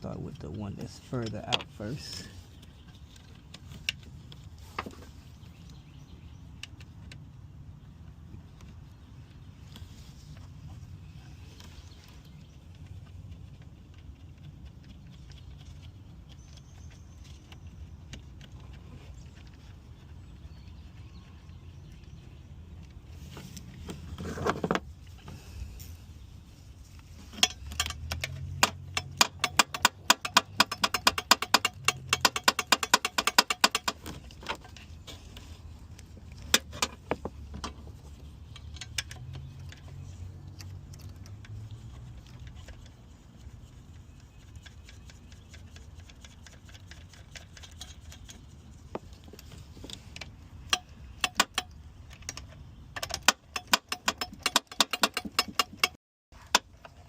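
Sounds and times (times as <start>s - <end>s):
hand ratchet clicking: 27.4s - 34.0s.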